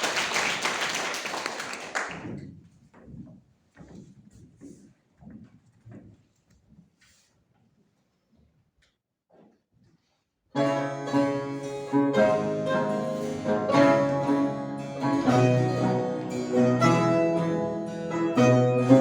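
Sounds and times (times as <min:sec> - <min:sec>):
mandolin ensemble playing: 0:10.6 - 0:19.0.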